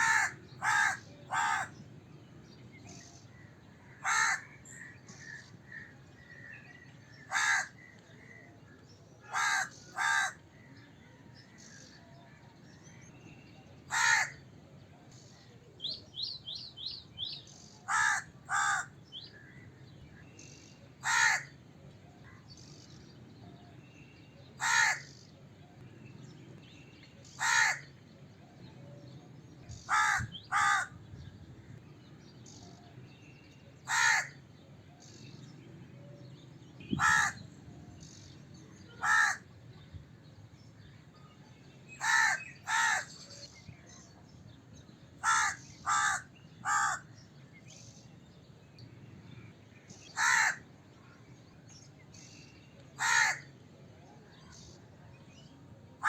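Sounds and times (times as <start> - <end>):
crow cawing: 0.0 - 1.8, 3.8 - 6.5, 7.2 - 7.9, 9.3 - 10.4, 13.9 - 14.4, 17.9 - 19.6, 21.0 - 21.6, 24.6 - 25.1, 27.4 - 27.9, 29.9 - 31.0, 33.9 - 34.4, 37.0 - 37.4, 39.0 - 39.4, 42.0 - 43.1, 45.2 - 47.1, 50.2 - 50.6, 53.0 - 53.5.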